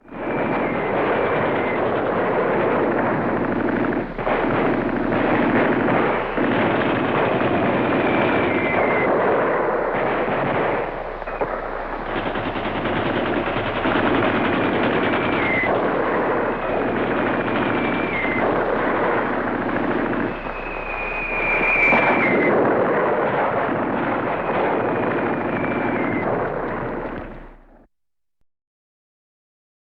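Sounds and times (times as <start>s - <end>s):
artillery explosions: 0.0s - 27.9s
machine-gun and rifle fire: 0.1s - 27.8s
short falling whistles: 15.1s - 22.8s, 24.1s - 27.2s.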